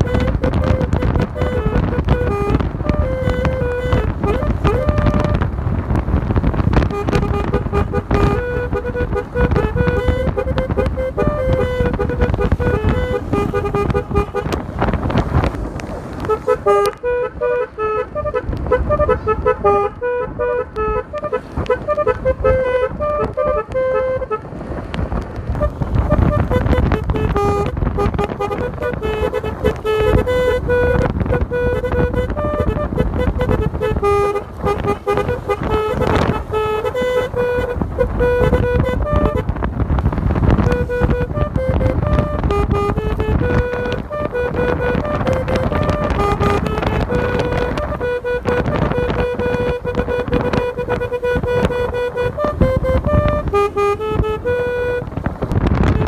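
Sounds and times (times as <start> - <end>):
low rumble: 0.0 - 17.2
multi-tone horn melody: 0.0 - 56.0.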